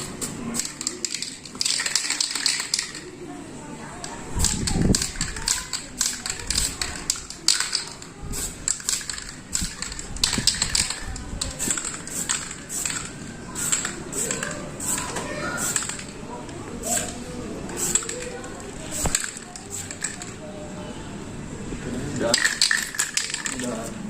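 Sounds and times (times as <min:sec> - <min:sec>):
aerosol spray can hissing: 0:00.0 - 0:03.0, 0:04.4 - 0:16.2, 0:16.8 - 0:20.3
spray can clicks: 0:00.0 - 0:03.1, 0:04.0 - 0:16.2, 0:16.8 - 0:20.4, 0:22.3 - 0:23.7.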